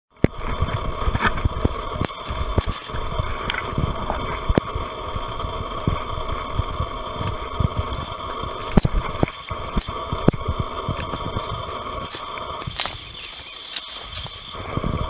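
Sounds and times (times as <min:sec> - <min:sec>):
high-pitched background drone: 0:00.1 - 0:15.0
footsteps on forest trail: 0:02.0 - 0:03.6, 0:08.0 - 0:15.0.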